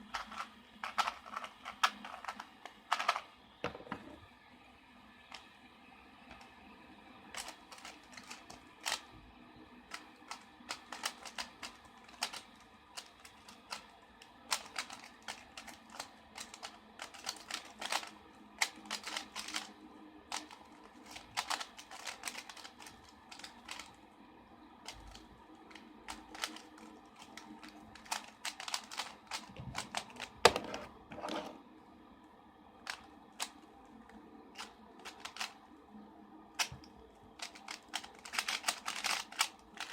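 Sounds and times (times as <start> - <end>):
puzzle cubes clicking: 9.9 - 13.9, 14.5 - 19.7, 26.1 - 30.7, 34.6 - 35.5, 37.4 - 39.9
knocks of cubes handled: 14.5 - 19.7, 20.3 - 23.9, 26.1 - 31.5, 34.6 - 35.5, 37.4 - 39.9.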